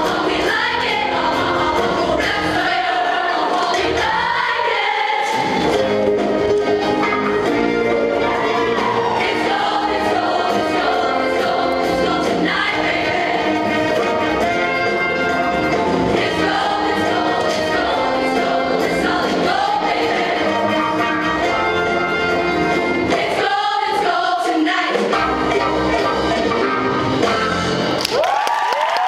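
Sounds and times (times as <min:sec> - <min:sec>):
choir singing in harmony: 0:00.0 - 0:27.7
band accompaniment: 0:00.0 - 0:28.2.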